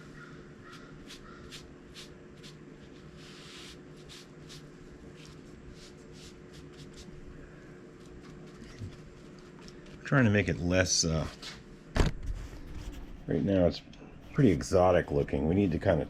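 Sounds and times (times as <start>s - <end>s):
steady low hum: 0.0s - 16.0s
paint brush strokes on metal: 0.8s - 7.1s, 14.2s - 16.0s.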